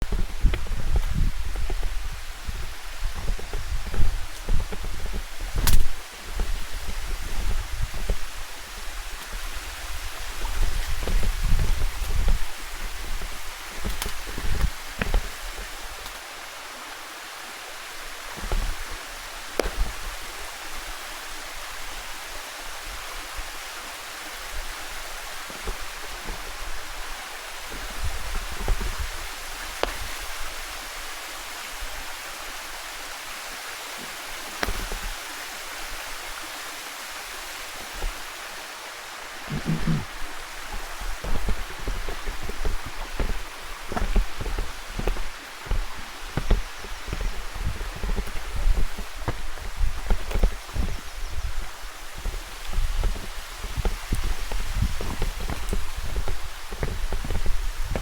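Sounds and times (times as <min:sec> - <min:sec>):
stream rushing over rocks: 0:00.0 - 0:58.0
low thumps: 0:39.5 - 0:40.2.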